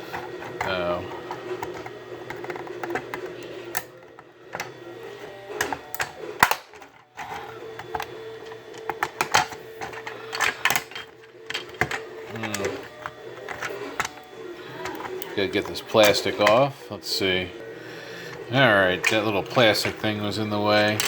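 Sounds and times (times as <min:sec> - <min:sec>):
plastic casing clicks and knocks: 0:00.0 - 0:04.8, 0:05.6 - 0:16.7.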